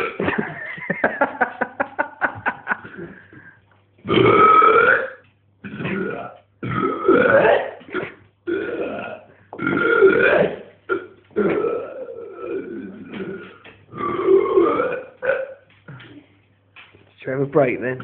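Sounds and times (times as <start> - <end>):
man belching: 0.0 - 0.2, 4.0 - 16.2.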